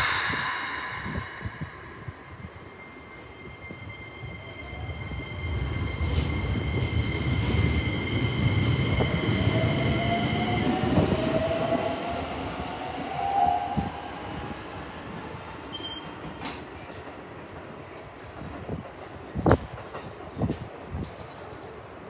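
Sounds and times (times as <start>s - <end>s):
thin whine rising in pitch: 0.0s - 4.9s
electric train low rumble: 0.0s - 22.0s.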